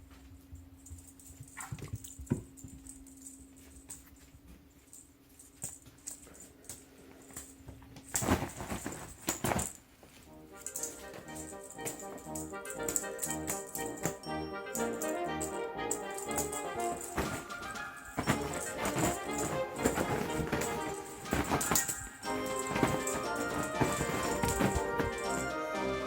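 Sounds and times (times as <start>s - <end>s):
rustling and scuffling: 0.0s - 25.7s
cats moving about: 0.9s - 14.2s, 14.8s - 25.5s
background music: 10.3s - 26.0s.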